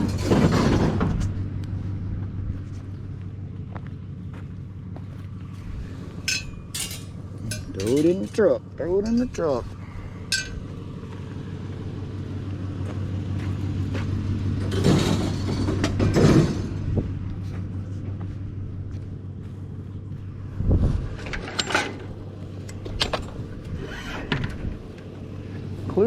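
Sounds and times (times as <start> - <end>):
scrap metal scraping: 0.0 - 1.4, 14.6 - 17.0
truck engine idling: 0.0 - 26.0.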